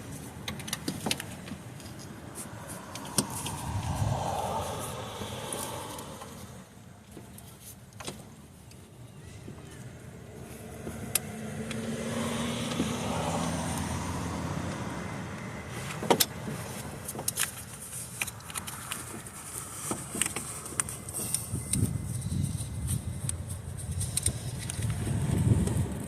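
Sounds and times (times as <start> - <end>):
car passing by: 2.4 - 6.8, 10.7 - 16.9.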